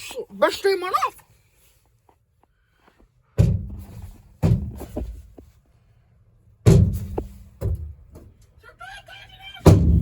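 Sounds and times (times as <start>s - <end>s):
heavy dull thumps: 3.4s - 5.6s, 6.6s - 8.2s.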